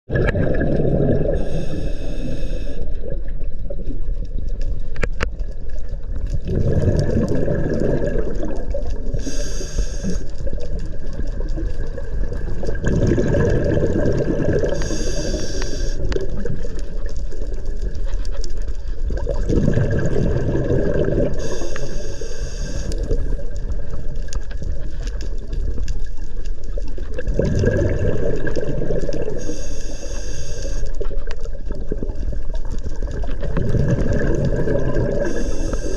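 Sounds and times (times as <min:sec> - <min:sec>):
exhaled bubbles underwater: 0:00.1 - 0:35.9
regulator hissing inhale: 0:01.4 - 0:03.0, 0:09.1 - 0:10.4, 0:14.7 - 0:16.0, 0:21.3 - 0:23.3, 0:29.4 - 0:31.0, 0:35.2 - 0:35.9.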